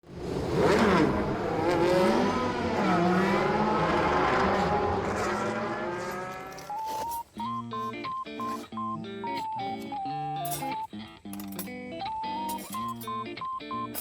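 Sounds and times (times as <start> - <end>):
car engine revving: 0.1 - 6.8.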